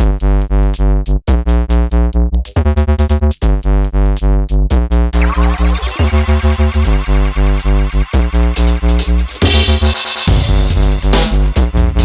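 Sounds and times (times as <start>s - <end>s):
electronic music with synth chords: 5.2s - 12.0s.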